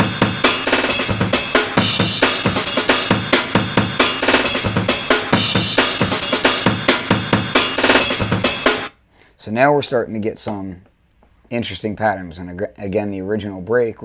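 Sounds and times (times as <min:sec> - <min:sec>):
looping drum break: 0:00.0 - 0:08.9.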